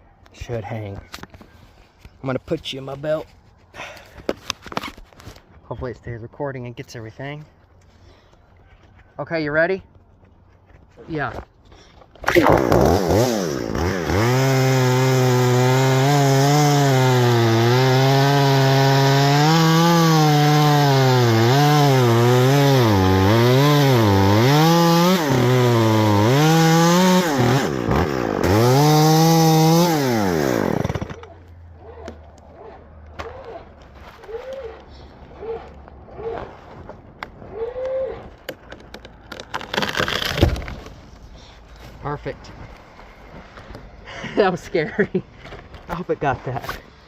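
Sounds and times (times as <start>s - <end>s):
chainsaw cutting wood: 12.2s - 32.2s, 37.6s - 40.9s.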